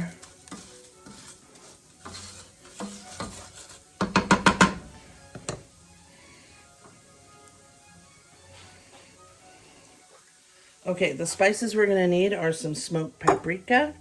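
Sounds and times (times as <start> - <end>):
spoon stirring rice in a pan: 0.0 - 10.8
spoon clattering against pan: 2.0 - 5.7.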